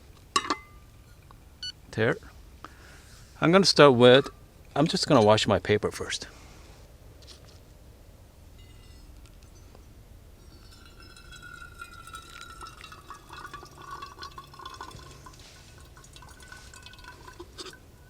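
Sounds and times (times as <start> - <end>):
water trickling and dripping: 10.4 - 18.0.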